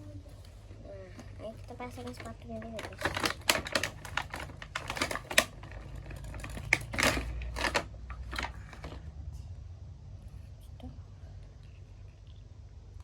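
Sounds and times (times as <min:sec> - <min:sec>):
plastic doll parts clicking: 0:02.0 - 0:09.0.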